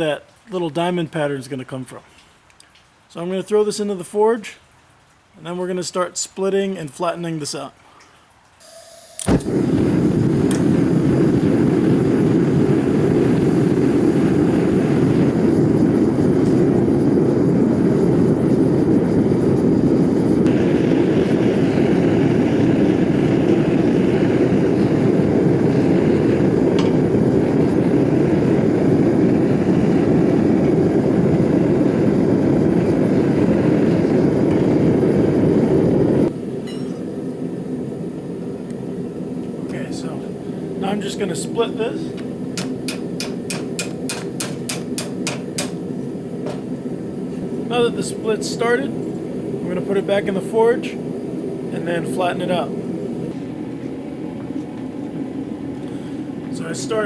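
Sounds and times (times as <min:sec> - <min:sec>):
forge rushing noise: 0:09.2 - 0:36.3.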